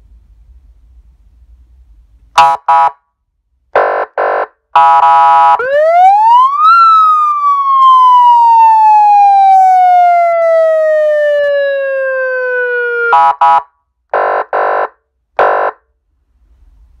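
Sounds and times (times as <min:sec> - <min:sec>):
siren wail: 0:04.8 - 0:13.6.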